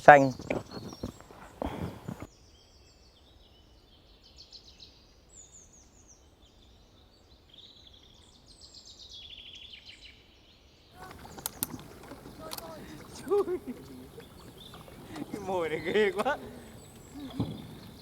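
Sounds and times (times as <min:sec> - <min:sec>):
birds chirping and trilling: 0:11.0 - 0:18.0.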